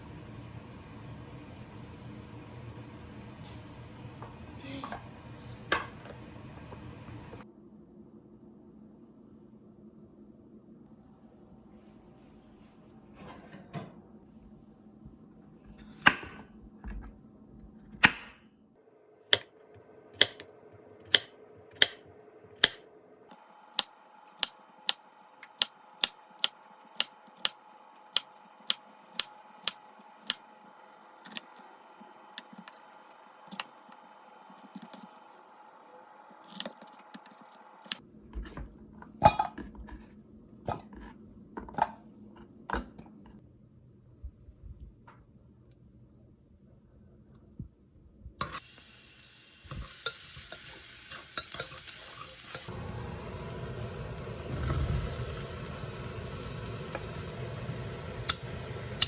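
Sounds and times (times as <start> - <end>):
faint steady hum: 18.6 - 59.0.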